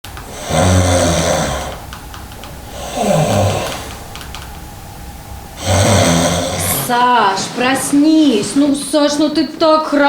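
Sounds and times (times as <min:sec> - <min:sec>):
man snoring: 0:00.1 - 0:07.1
quiet breathing: 0:00.1 - 0:10.0.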